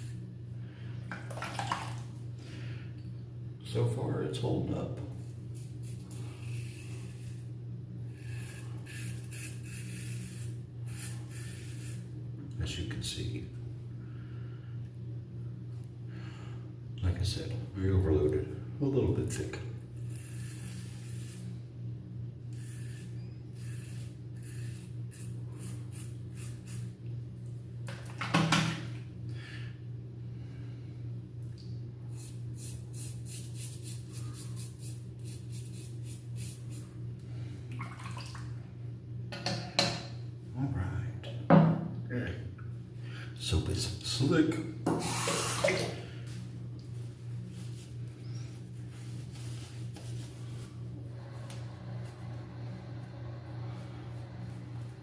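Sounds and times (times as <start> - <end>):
steady low hum: 0.0 - 55.0
razor scraping through stubble: 8.1 - 12.1, 20.0 - 21.6, 22.5 - 26.9.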